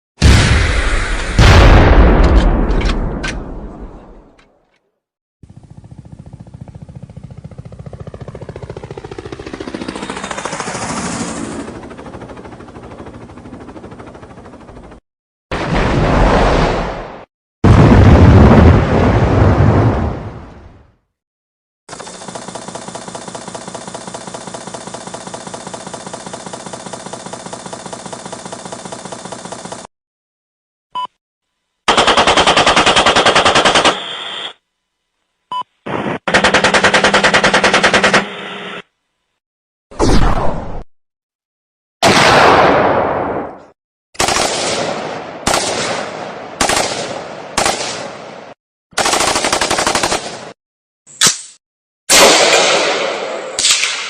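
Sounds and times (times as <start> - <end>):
engine idling with even throb: 5.5 - 9.5, 21.9 - 29.8
machine-gun fire bursts: 21.9 - 29.9, 31.9 - 34.1, 36.1 - 38.4, 44.2 - 48.2, 49.0 - 50.6.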